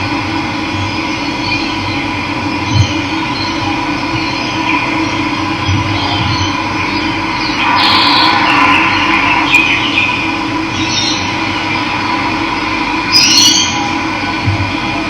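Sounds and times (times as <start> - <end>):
birds chirping: 6.0 - 12.0.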